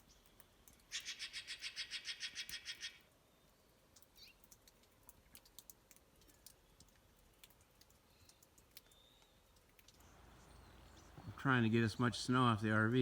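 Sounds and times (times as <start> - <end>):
faint sharp clicks: 3.9 - 10.1.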